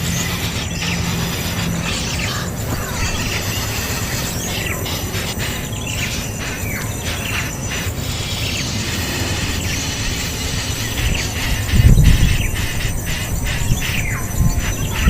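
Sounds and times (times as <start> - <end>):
high insect drone: 0.0 - 15.0
low rumble: 7.9 - 13.1.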